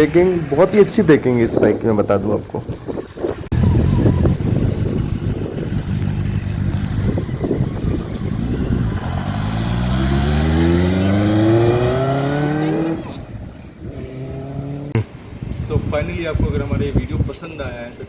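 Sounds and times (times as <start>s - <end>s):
motorcycle engine accelerating: 2.8s - 15.1s.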